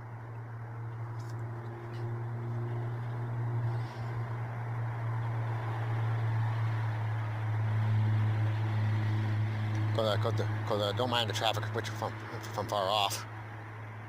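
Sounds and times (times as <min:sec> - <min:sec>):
distant road traffic hum: 0:00.0 - 0:14.0.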